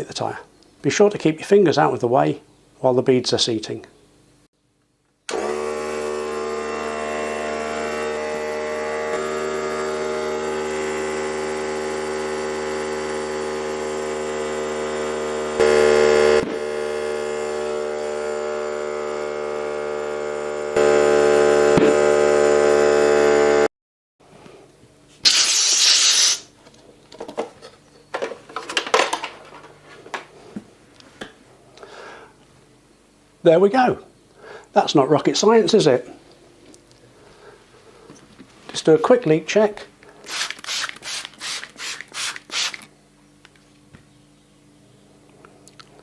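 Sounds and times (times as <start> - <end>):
electric tyre pump running: 5.3 - 23.7, 25.2 - 26.5, 40.2 - 42.9
air hissing: 25.2 - 26.5, 40.2 - 42.9.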